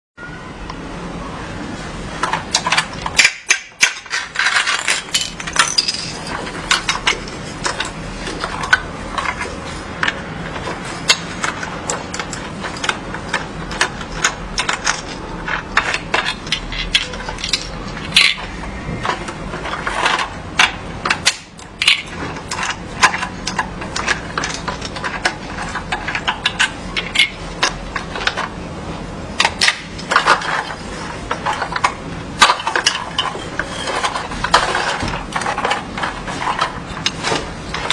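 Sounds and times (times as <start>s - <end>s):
low background hum: 0.2s - 37.9s
plastic toy parts clicking: 11.1s - 18.5s.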